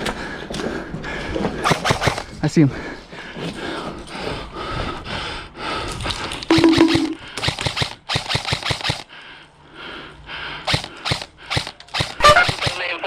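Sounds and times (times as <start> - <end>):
airsoft guns firing in bursts: 1.6 - 2.4, 6.5 - 9.1, 10.7 - 13.0.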